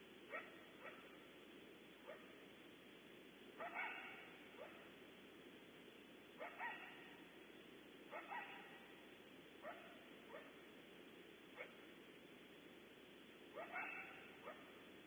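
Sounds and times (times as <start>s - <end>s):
steady hiss: 0.0s - 15.0s
coyote barking and yipping: 0.2s - 1.3s, 2.0s - 2.4s, 3.6s - 5.0s, 6.4s - 7.4s, 8.0s - 10.7s, 11.5s - 11.9s, 13.4s - 15.0s.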